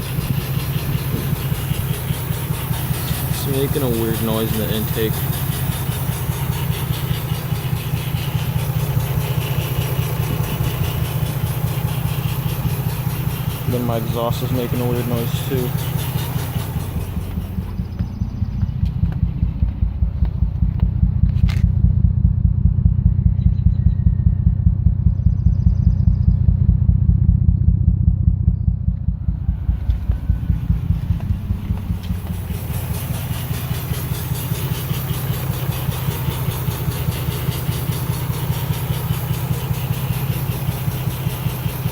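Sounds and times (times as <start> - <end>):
car engine idling: 0.0 - 41.9.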